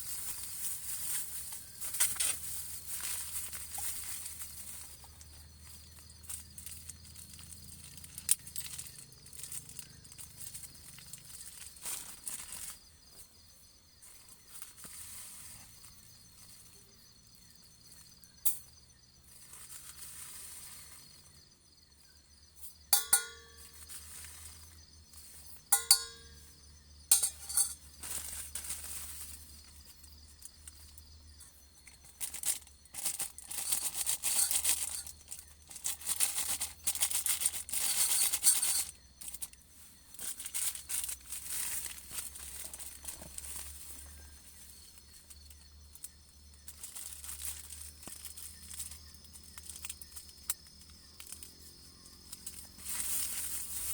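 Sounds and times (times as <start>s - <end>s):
rustling and crinkling: 0.0s - 16.8s, 19.2s - 26.5s, 27.1s - 53.9s
short ringing clinks: 22.9s - 23.8s, 25.7s - 26.5s, 27.1s - 27.8s.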